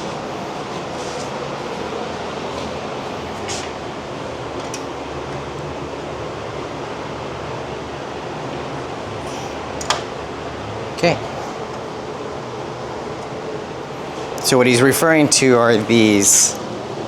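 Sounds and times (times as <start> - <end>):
fan hiss: 0.0 - 17.0.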